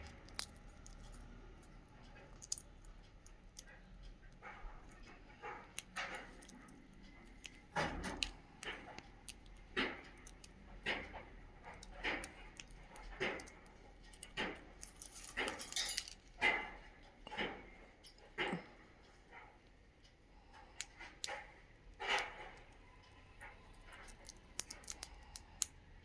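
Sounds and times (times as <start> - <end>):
beak clicking on grains: 0.0 - 16.2, 23.4 - 25.8.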